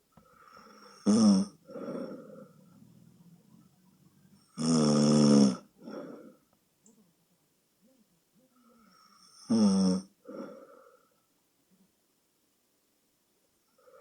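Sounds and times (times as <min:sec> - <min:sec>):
woman snoring: 0:00.4 - 0:02.6, 0:04.4 - 0:06.4, 0:08.8 - 0:10.8
soft breath out: 0:01.6 - 0:03.0.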